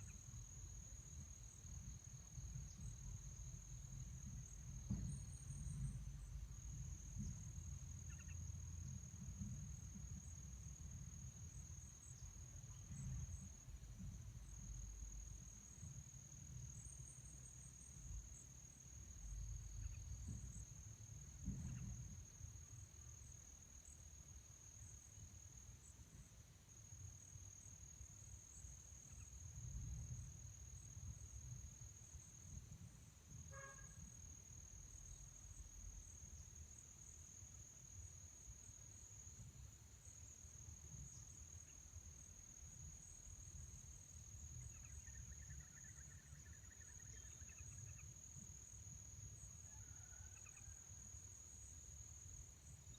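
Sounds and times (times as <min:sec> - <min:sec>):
crickets trilling: 0:00.0 - 0:52.9.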